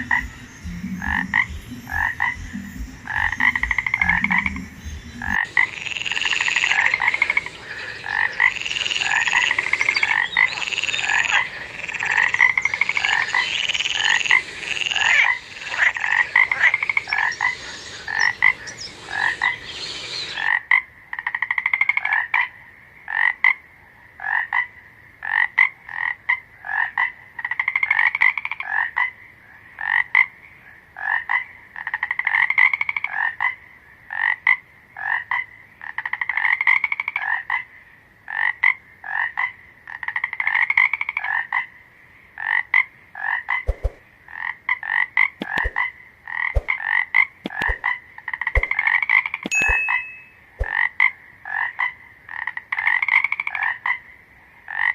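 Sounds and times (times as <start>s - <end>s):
background hiss: 0.0s - 20.6s
frogs croaking: 0.0s - 54.9s.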